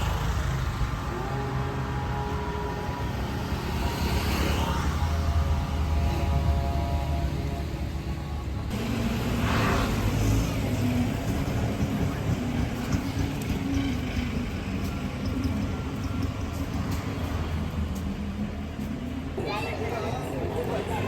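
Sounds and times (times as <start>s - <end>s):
vehicle passing by: 0.0s - 11.4s
traffic rumble: 0.0s - 21.0s.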